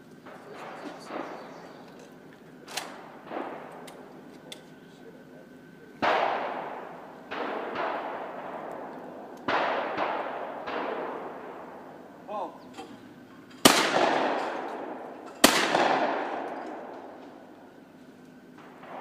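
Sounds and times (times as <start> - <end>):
loud echoing gunshots: 0.2 - 1.9, 2.6 - 4.3, 6.0 - 12.5, 13.6 - 17.8, 18.6 - 19.0.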